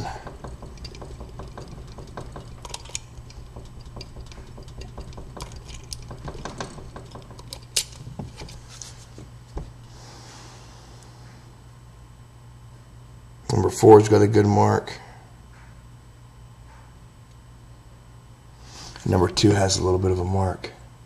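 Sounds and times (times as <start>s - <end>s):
steady low hum: 0.0s - 21.0s
key clicking and rattling in lock: 0.2s - 8.6s.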